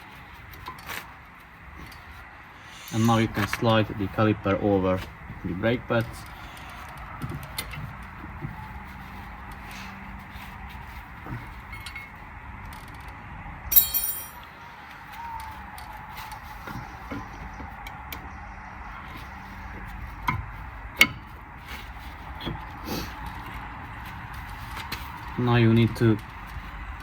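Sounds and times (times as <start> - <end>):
metal tools clinking and knocking: 11.7 - 12.1, 13.7 - 14.5.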